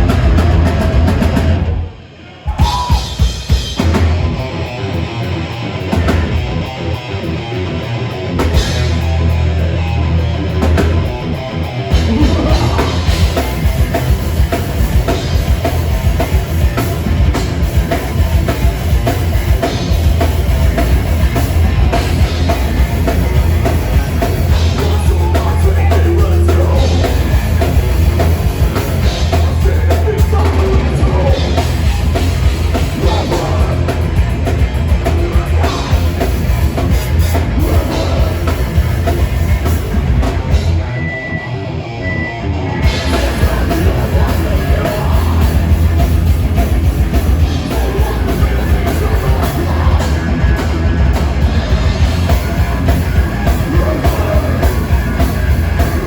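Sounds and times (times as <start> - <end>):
drum kit: 0.0 - 41.8, 42.8 - 56.0
bass guitar: 0.0 - 56.0
distorted electric guitars: 0.0 - 56.0
person singing: 11.9 - 13.6, 24.5 - 27.8, 28.7 - 32.0, 32.7 - 34.2, 35.0 - 36.6, 37.4 - 39.2, 42.8 - 46.6, 47.2 - 51.2, 53.2 - 56.0.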